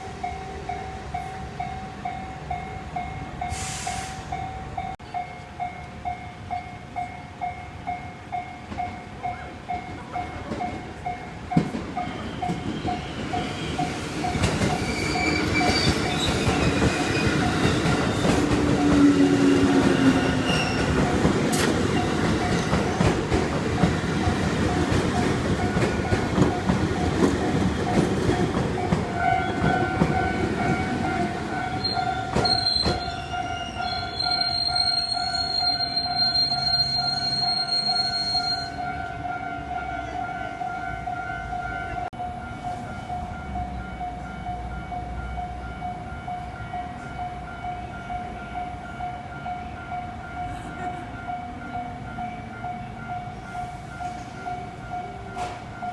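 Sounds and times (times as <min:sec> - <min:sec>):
train wheels rumbling on rails: 0:07.8 - 0:39.0, 0:46.6 - 0:55.9
level crossing warning bell ringing: 0:17.3 - 0:55.9.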